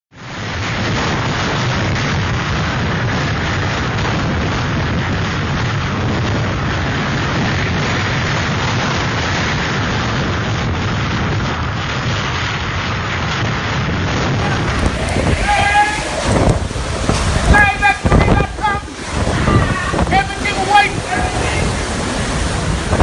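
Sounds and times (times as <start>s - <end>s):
strong wind buffeting microphone: 0.1s - 23.0s.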